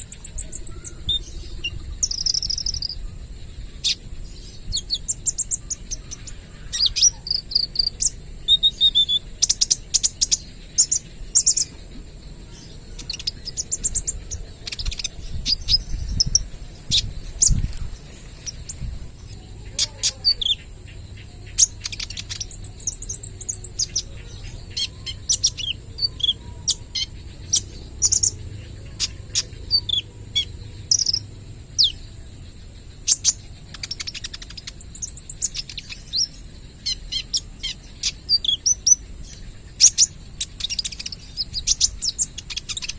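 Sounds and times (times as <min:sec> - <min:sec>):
bird chirping and trilling: 0:00.0 - 0:42.9
high insect drone: 0:00.0 - 0:42.9.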